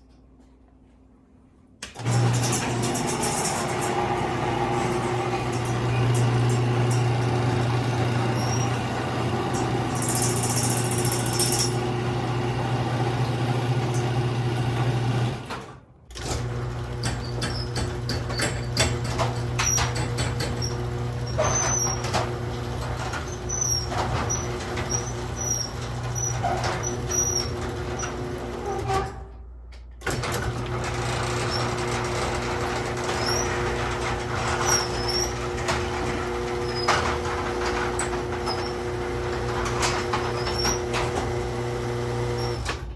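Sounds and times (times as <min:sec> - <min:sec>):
garage door motor hum: 0:01.7 - 0:42.9
doors clicking and rattling: 0:01.8 - 0:29.2, 0:30.0 - 0:42.9.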